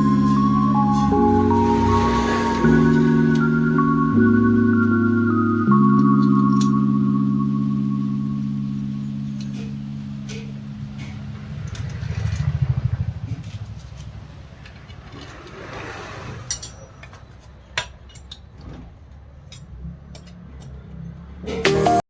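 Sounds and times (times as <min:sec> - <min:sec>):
sharp metallic clicks: 0:09.4 - 0:15.7
small engine running: 0:10.4 - 0:16.5.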